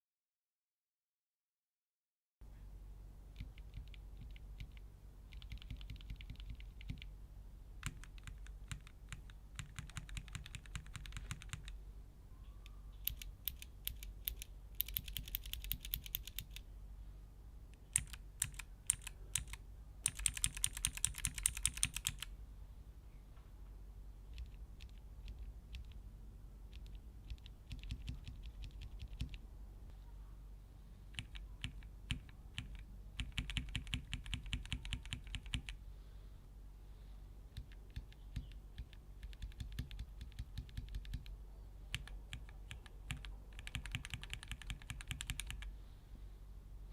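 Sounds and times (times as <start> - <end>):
mechanical keyboard typing: 3.3 - 7.1, 7.8 - 11.8, 13.0 - 16.6, 17.8 - 22.3, 24.3 - 26.0, 26.7 - 29.4, 31.1 - 35.8, 37.5 - 45.7.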